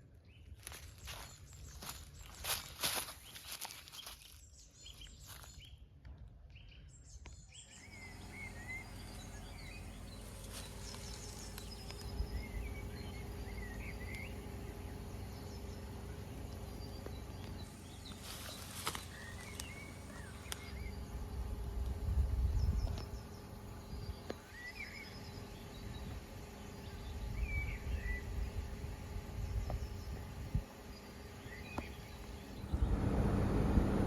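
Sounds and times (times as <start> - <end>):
birds chirping: 0.2 - 5.9, 6.5 - 34.0
heat pump unit humming: 7.8 - 34.0
low rumble: 32.4 - 34.0.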